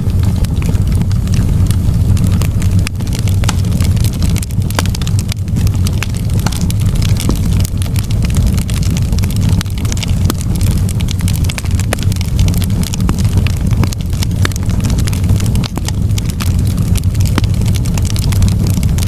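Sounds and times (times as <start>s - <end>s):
fire pops and snaps: 0.0s - 19.0s
low rumble of flames: 0.0s - 19.0s.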